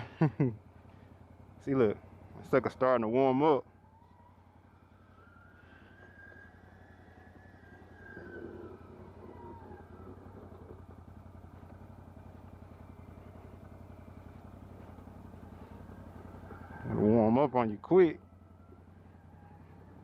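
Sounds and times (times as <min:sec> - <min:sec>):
engine idling: 0:00.0 - 0:20.0.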